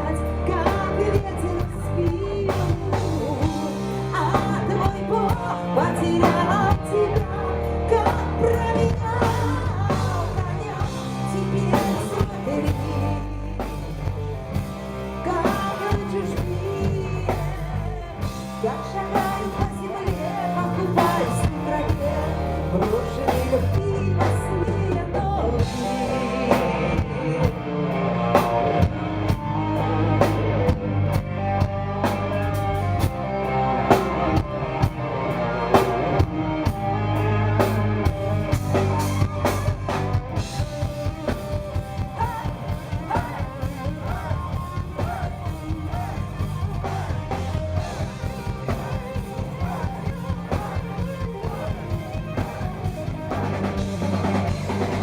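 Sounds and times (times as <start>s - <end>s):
rock band playing live: 0.0s - 55.0s
drum kit beat: 37.6s - 55.0s.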